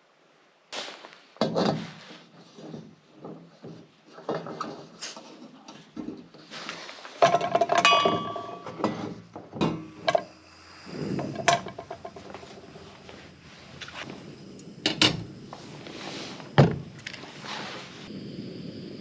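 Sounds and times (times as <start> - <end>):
hard items knocking and clinking: 7.2 - 10.4, 11.2 - 14.1
short metallic ringing: 7.8 - 8.8.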